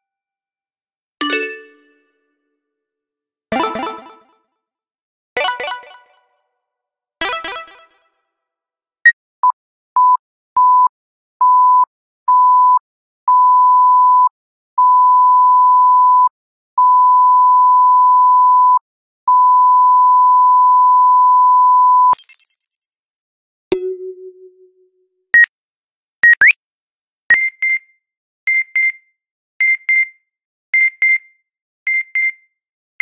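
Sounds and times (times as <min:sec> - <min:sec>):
censor beep tone: 0:09.4 - 0:22.1, 0:26.2 - 0:26.6
short higher blip: 0:26.2 - 0:26.6.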